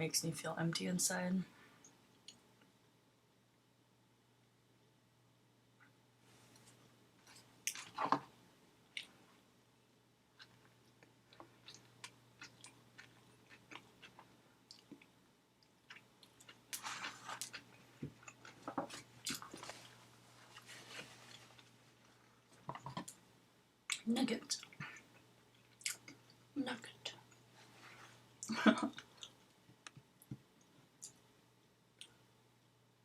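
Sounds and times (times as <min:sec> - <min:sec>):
person chewing food: 0:10.4 - 0:21.8, 0:28.9 - 0:29.5.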